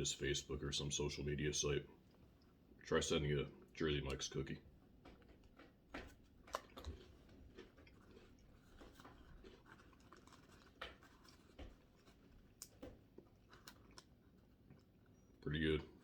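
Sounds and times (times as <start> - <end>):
chewing cookie crunches: 3.6 - 16.0.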